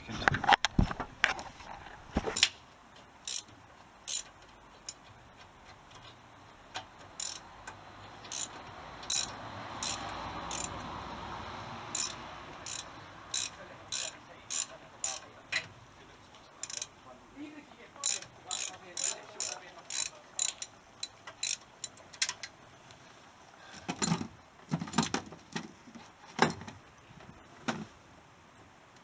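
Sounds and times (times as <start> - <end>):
metal tool clicks: 3.3 - 3.5, 4.1 - 5.0, 7.2 - 7.5, 8.3 - 10.8, 12.0 - 15.3, 16.6 - 16.9, 18.0 - 22.4.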